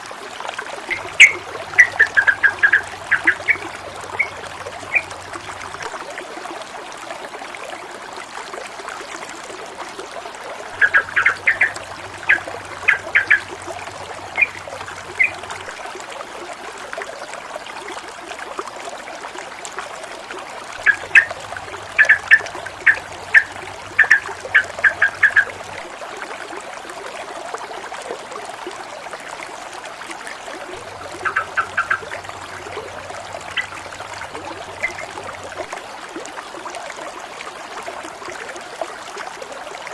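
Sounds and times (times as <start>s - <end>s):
water flowing and babbling: 0.0s - 39.9s
quick repeated bird calls: 0.9s - 5.2s, 10.7s - 13.5s, 14.3s - 15.4s, 22.0s - 25.5s, 31.1s - 32.2s.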